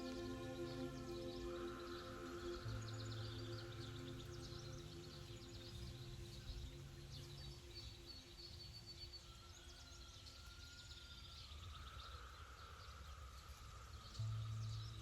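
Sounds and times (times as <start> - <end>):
small birds chirping: 0.0 - 15.0
soft background music tone: 0.0 - 15.0.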